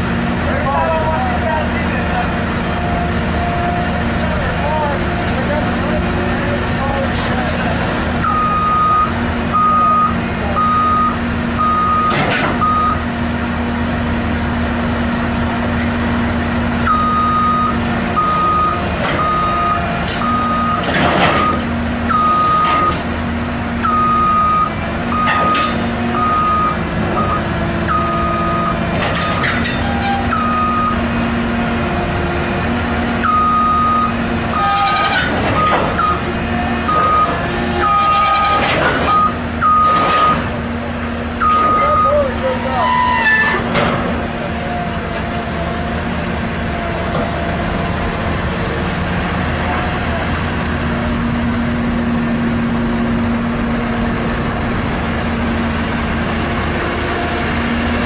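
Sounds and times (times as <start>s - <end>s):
diesel machine running: 0.0s - 58.0s
reversing alarm beeping: 8.2s - 13.1s, 16.8s - 23.0s, 23.8s - 28.8s, 29.9s - 31.1s, 33.2s - 40.5s, 41.4s - 43.3s.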